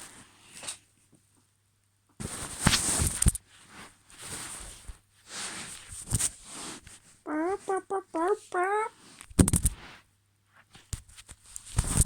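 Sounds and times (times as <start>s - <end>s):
person imitating a chicken: 7.3s - 9.0s.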